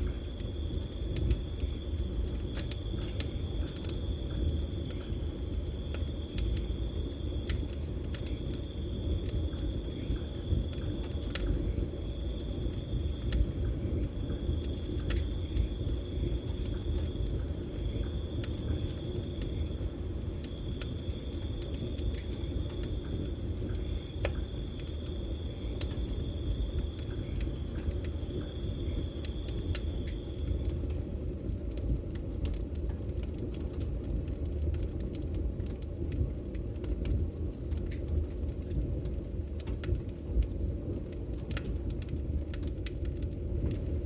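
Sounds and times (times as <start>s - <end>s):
crickets trilling: 0.0s - 42.3s
campfire crackling: 0.0s - 43.9s.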